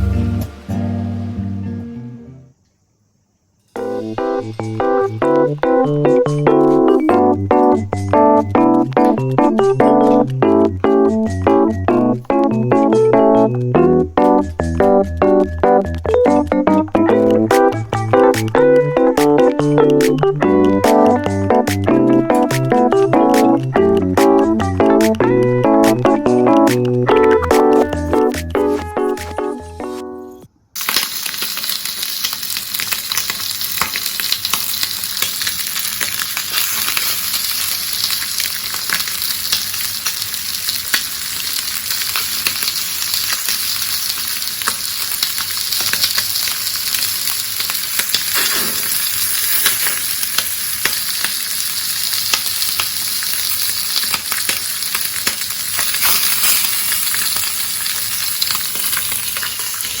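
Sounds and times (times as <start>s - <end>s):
food sizzling in a pan: 3.7s - 8.1s, 17.1s - 25.1s, 30.8s - 60.0s.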